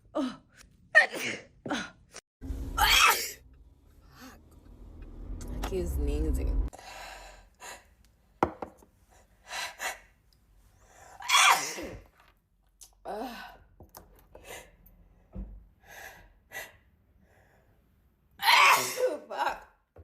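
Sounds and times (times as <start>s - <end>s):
woman sneezing: 18.4s - 19.4s.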